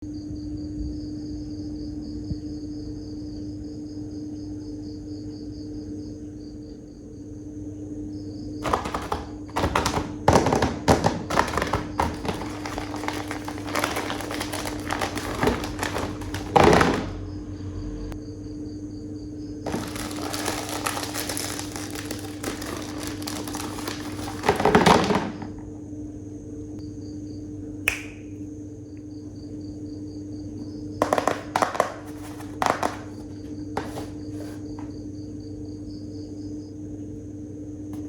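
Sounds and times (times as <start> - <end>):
steady background hum: 0.0 - 38.0
plastic packaging crinkling: 8.6 - 17.2, 19.6 - 25.5, 31.0 - 34.6.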